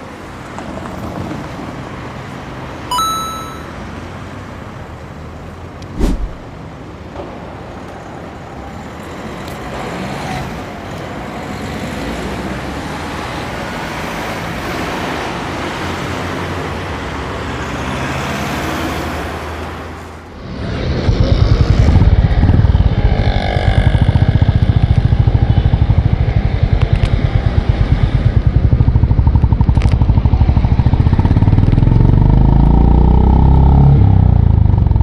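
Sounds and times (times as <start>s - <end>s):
wind and road noise: 0.0s - 35.0s
motorcycle engine running: 21.0s - 32.6s.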